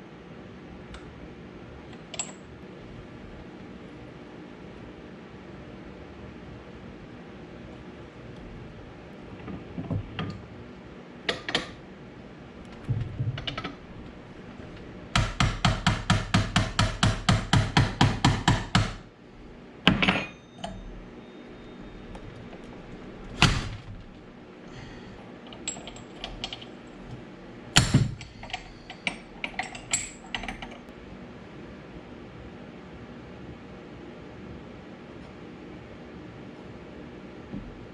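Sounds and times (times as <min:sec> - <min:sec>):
metal parts clinking and knocking: 0:12.7 - 0:14.1, 0:25.5 - 0:26.8, 0:27.8 - 0:30.9.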